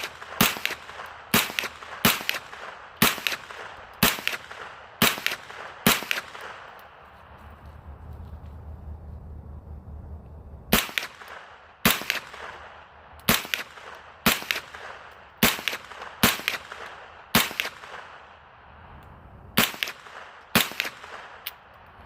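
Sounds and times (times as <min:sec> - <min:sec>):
gunshots with echo: 0:00.0 - 0:06.8, 0:10.7 - 0:18.4, 0:19.6 - 0:21.6.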